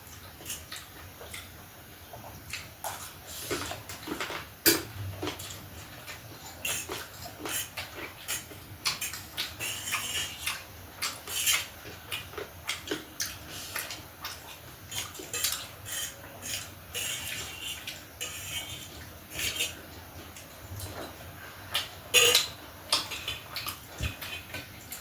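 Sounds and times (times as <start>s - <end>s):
wet chewing and smacking: 0.2s - 4.4s, 5.1s - 25.0s
cutlery clicking on plate: 4.2s - 4.9s, 21.8s - 24.4s.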